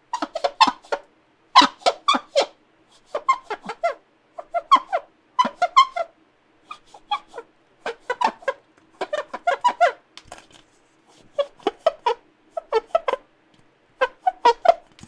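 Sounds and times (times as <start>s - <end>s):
squeaky rubbing of surface: 0.0s - 1.0s, 1.6s - 2.5s, 3.1s - 6.1s, 6.7s - 10.0s, 11.1s - 13.2s, 14.0s - 15.0s.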